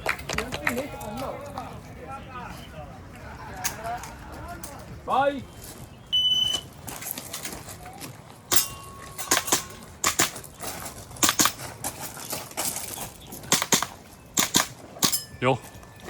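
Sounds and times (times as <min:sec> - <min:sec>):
airsoft pistol shots: 0:13.5 - 0:15.2.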